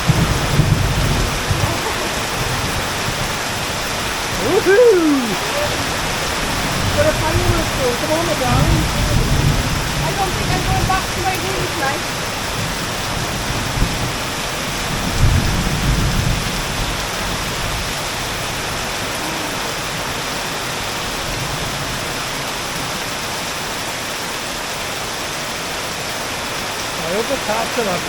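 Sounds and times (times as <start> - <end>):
low rumble of thunder: 0.0 - 4.4, 5.7 - 23.0
torrential rain pouring: 0.0 - 28.0.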